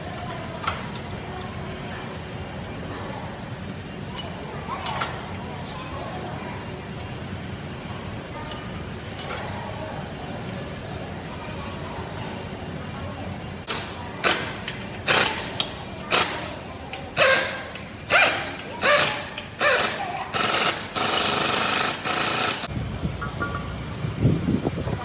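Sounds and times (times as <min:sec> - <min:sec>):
harsh tool bursts: 0:13.7 - 0:16.5, 0:17.2 - 0:22.7
steady low hum: 0:19.2 - 0:25.0.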